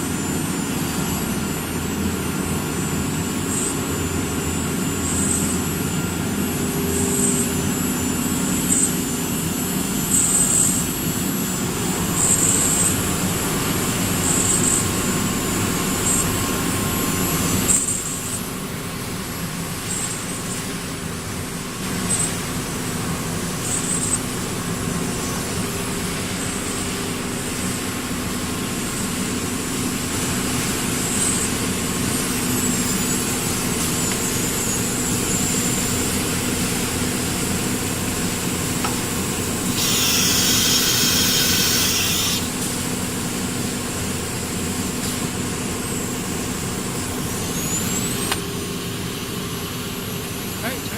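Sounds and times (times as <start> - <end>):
router machine drone: 27.4 - 44.6
high-pitched cutting bursts: 39.6 - 42.6.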